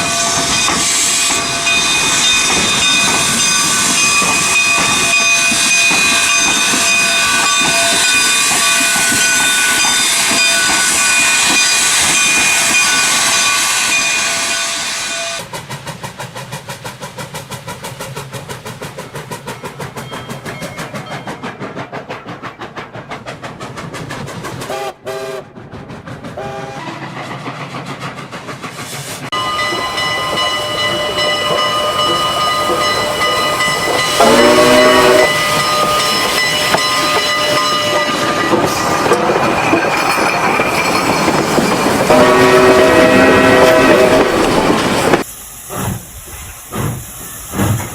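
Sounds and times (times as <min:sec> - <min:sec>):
steam engine chugging: 0:00.0 - 0:47.9
steam hissing: 0:00.0 - 0:47.9
steam whistle: 0:24.7 - 0:25.4, 0:26.4 - 0:26.9, 0:34.1 - 0:36.3, 0:42.1 - 0:44.6.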